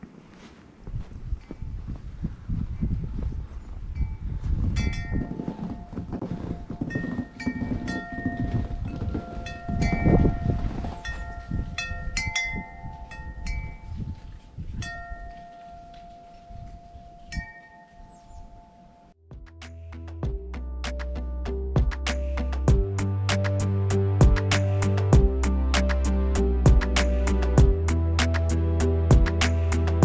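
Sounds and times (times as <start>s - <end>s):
low rumble: 19.2s - 30.0s.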